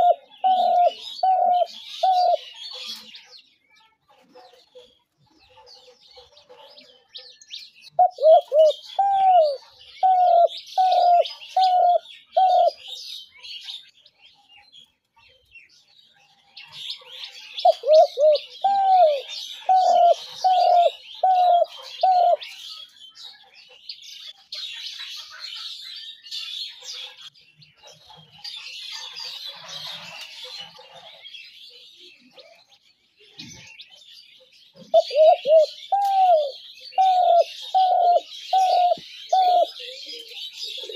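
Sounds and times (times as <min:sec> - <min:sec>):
dove cooing: 0:00.0 - 0:03.1, 0:08.0 - 0:12.9, 0:17.6 - 0:22.5, 0:34.8 - 0:40.9
small birds chirping: 0:00.0 - 0:40.9.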